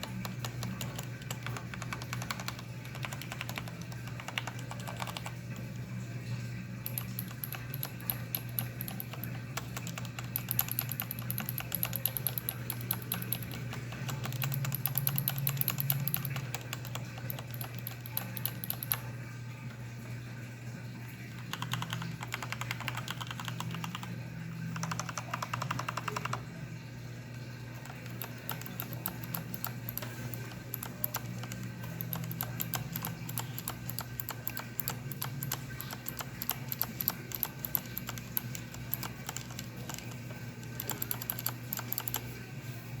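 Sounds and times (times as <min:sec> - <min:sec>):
mechanical keyboard keys clicking: 0:00.0 - 0:05.8, 0:06.8 - 0:19.1, 0:21.4 - 0:26.4, 0:27.8 - 0:42.4.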